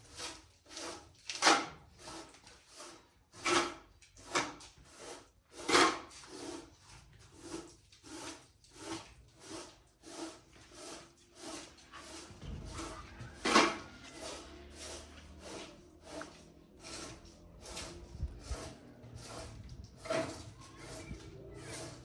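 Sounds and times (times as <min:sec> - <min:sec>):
rhythmic scraping strokes: 0:09.3 - 0:22.0.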